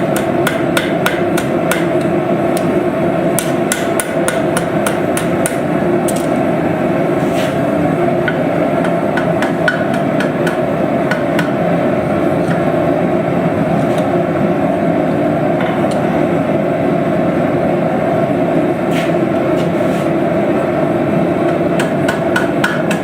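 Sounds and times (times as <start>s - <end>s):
hammer tapping on metal: 8.3s - 11.6s, 21.5s - 23.0s.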